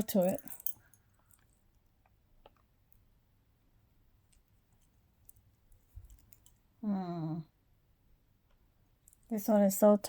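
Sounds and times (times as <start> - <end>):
jewelry clicking: 0.0 - 1.6, 6.0 - 6.6
woman humming: 6.8 - 7.5.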